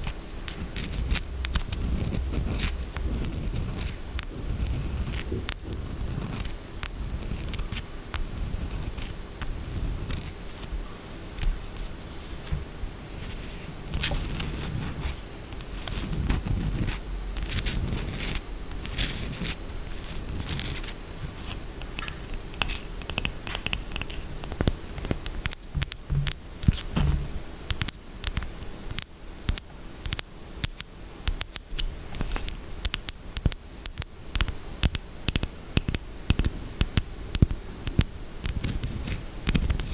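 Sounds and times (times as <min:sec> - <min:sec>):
scratching on soap: 0:00.0 - 0:27.0, 0:35.3 - 0:39.9.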